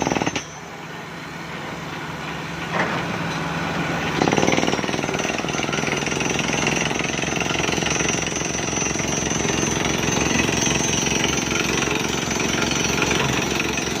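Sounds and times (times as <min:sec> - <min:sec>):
rock drill hammering: 0:00.0 - 0:00.5, 0:04.2 - 0:14.0.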